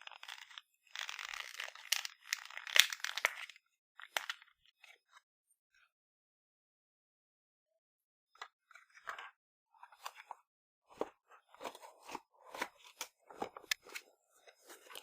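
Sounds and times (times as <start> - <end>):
packaging being torn and crinkled: 0.0 - 3.6.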